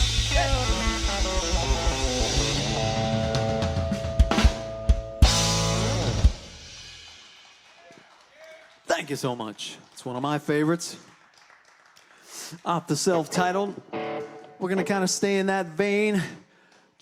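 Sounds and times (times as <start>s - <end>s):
live country band playing: 0.0s - 6.6s, 13.1s - 16.0s.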